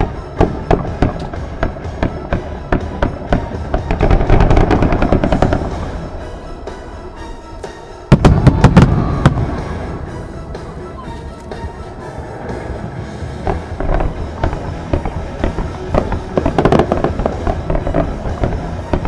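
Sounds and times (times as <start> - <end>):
fireworks booms: 0.0 - 6.1, 8.1 - 10.1, 13.4 - 19.0
fireworks bangs and crackles: 0.0 - 7.0, 8.1 - 10.8, 12.6 - 19.0
background music: 0.0 - 19.0.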